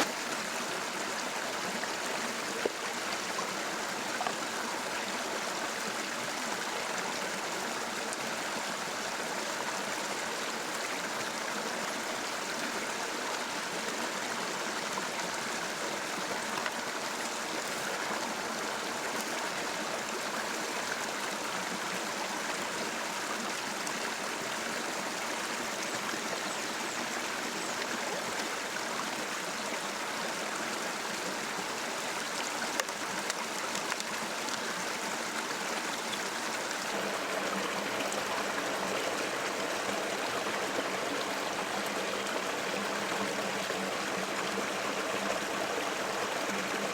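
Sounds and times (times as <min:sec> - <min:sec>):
river water rushing: 0:00.0 - 0:11.3, 0:28.4 - 0:46.9.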